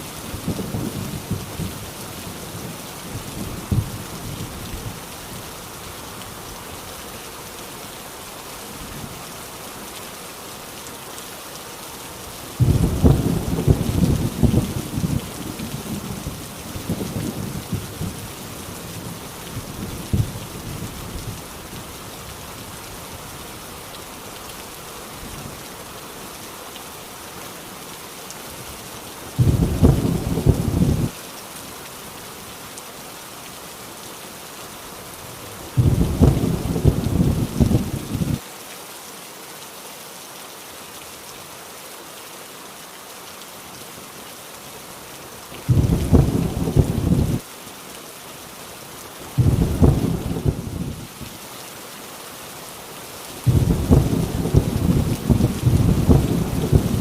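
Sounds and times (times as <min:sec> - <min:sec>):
heavy rain: 0:00.0 - 0:57.0
low thunder rumbles: 0:12.6 - 0:18.3, 0:29.4 - 0:31.1, 0:35.8 - 0:38.4, 0:45.7 - 0:47.4, 0:49.4 - 0:51.1, 0:53.5 - 0:57.0.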